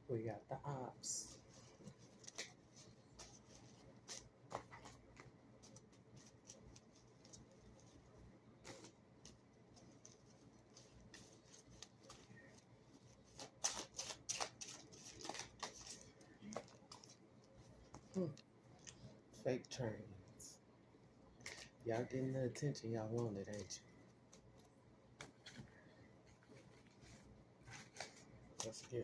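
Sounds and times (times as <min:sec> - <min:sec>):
card shuffling: 0:01.3 - 0:08.0, 0:08.6 - 0:18.1, 0:23.1 - 0:29.0
cards clicking and rustling: 0:01.9 - 0:07.9, 0:08.6 - 0:12.6, 0:13.2 - 0:17.3, 0:23.1 - 0:29.0.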